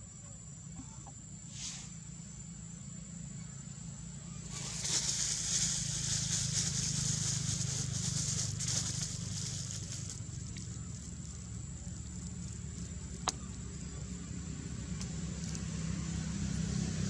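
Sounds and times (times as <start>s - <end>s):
high insect buzz: 4.1s - 15.7s
crackling rustle: 4.4s - 14.0s.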